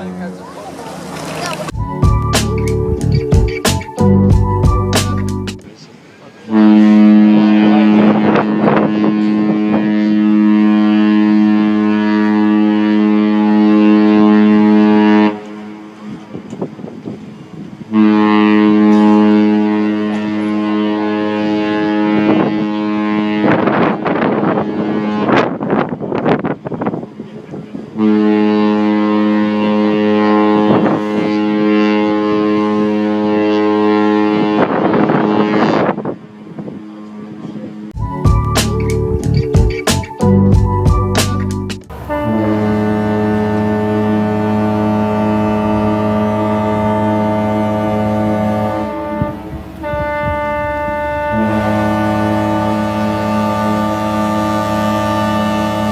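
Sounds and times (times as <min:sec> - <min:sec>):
deep ship horn blast: 0:06.4 - 0:16.5, 0:17.8 - 0:26.0, 0:27.7 - 0:38.0, 0:41.9 - 0:55.9.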